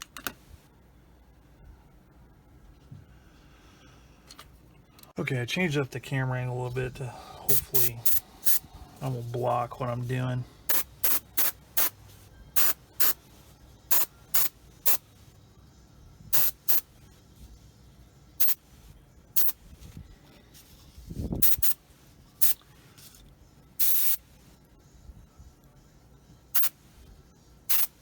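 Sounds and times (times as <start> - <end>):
airbrush spraying hiss bursts: 7.5 - 9.2, 10.6 - 13.2, 13.9 - 15.0, 16.3 - 16.9, 18.4 - 18.6, 19.4 - 19.6, 21.4 - 21.8, 22.4 - 22.6, 23.8 - 24.2, 26.6 - 26.8, 27.7 - 28.0.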